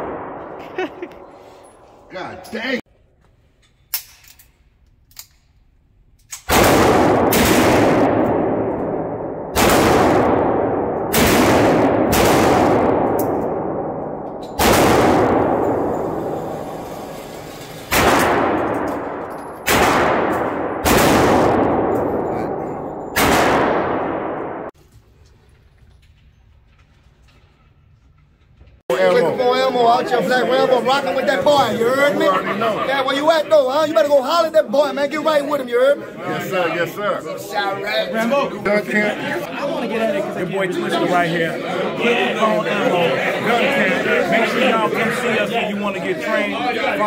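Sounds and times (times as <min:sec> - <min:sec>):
revolver shots echoing: 0:06.4 - 0:24.7.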